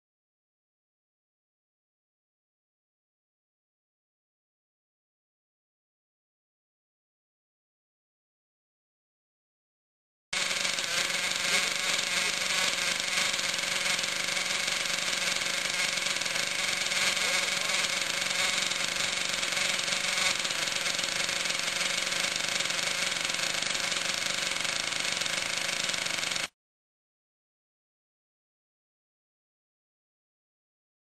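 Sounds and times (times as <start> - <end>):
rc truck running noise: 10.4 - 26.5.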